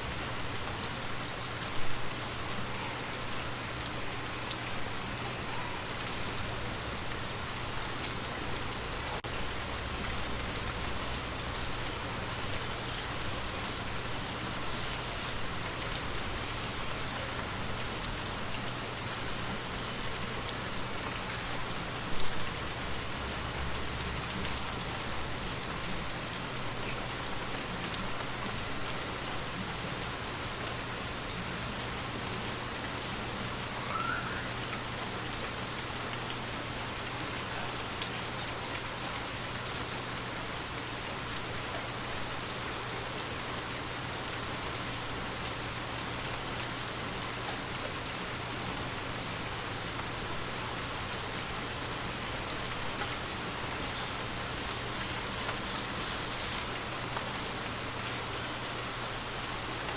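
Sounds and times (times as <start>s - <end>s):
steady rain falling: 0.0s - 59.9s
faint chirp: 33.8s - 34.6s.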